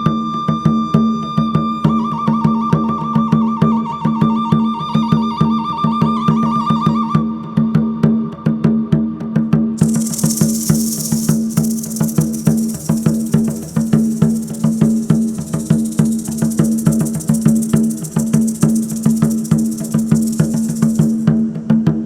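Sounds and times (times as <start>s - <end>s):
high rattling hiss: 9.8s - 21.3s
wooden percussion strikes: 9.8s - 21.3s.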